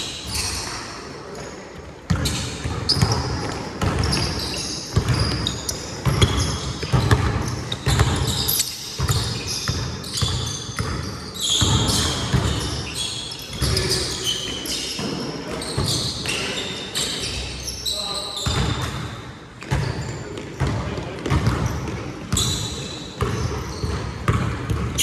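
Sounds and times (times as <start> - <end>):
shoe squeaks: 0.0 - 1.0, 2.1 - 19.0, 22.3 - 24.0
basketball bouncing: 2.1 - 12.7, 20.6 - 21.8, 23.2 - 25.0
players' voices: 11.9 - 23.9.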